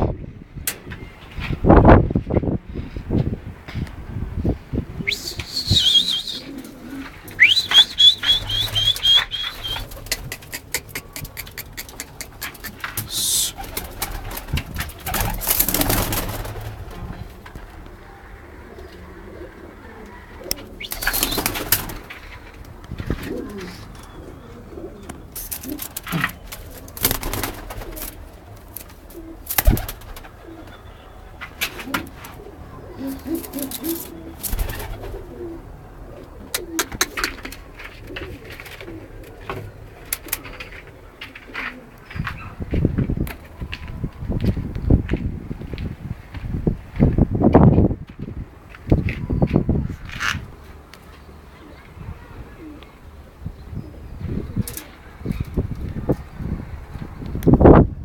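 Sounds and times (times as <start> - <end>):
pigeons cooing: 5.0 - 31.0, 31.6 - 42.6, 51.5 - 55.6
wings flapping: 5.1 - 17.8, 20.5 - 24.0, 25.3 - 30.8, 33.1 - 35.3, 36.6 - 39.1.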